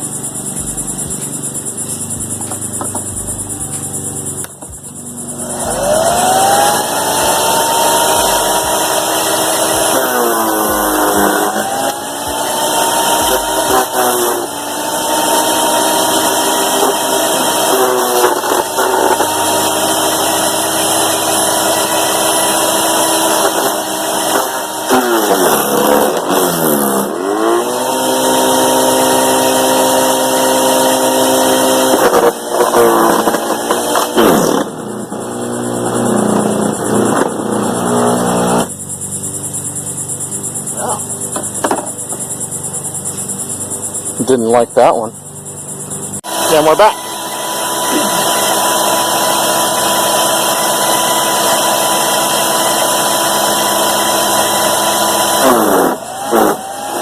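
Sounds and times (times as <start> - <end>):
crickets chirping: 0.0 - 47.0
wood chipper chewing sticks: 5.5 - 38.7, 47.8 - 57.0.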